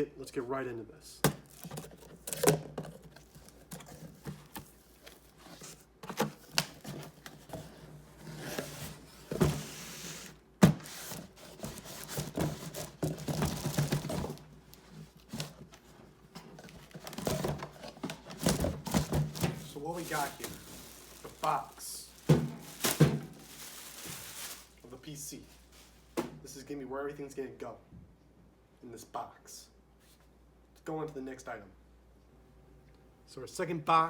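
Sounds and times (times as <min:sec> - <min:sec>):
cardboard rustling: 0:01.4 - 0:26.2
cardboard scraping: 0:01.5 - 0:15.9.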